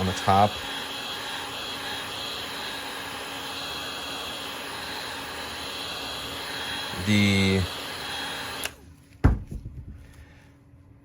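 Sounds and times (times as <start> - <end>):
thin high whine: 0.0 - 8.8
fan or blower running: 0.0 - 11.0.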